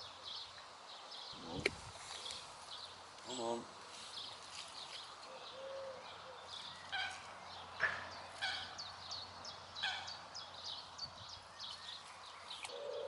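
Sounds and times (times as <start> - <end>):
small birds chirping: 0.0 - 13.0.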